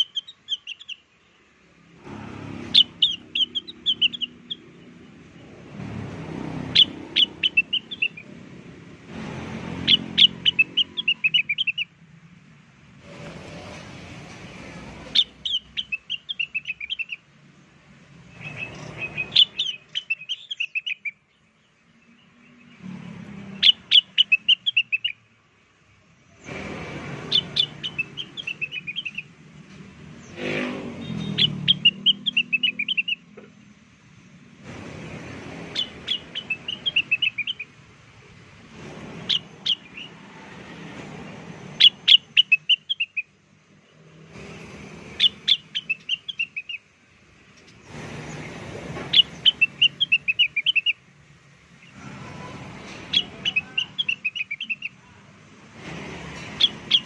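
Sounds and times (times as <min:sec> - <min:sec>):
high bird chirping: 0:00.0 - 0:08.5, 0:09.1 - 0:12.0, 0:15.0 - 0:17.3, 0:18.2 - 0:22.8, 0:23.5 - 0:25.3, 0:26.4 - 0:29.4, 0:30.1 - 0:33.4, 0:35.3 - 0:37.8, 0:39.0 - 0:40.2, 0:41.2 - 0:44.0, 0:45.0 - 0:46.9, 0:47.5 - 0:51.0, 0:51.8 - 0:55.0, 0:56.4 - 0:57.0.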